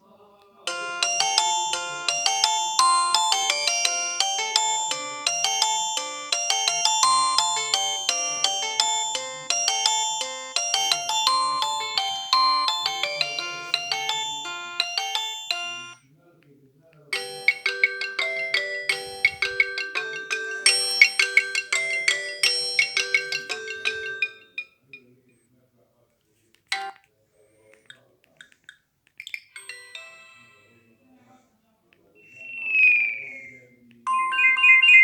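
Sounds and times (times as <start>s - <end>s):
electronic phone ringtone melody: 0.7s - 16.0s, 17.2s - 24.7s, 29.5s - 30.9s, 32.2s - 35.0s.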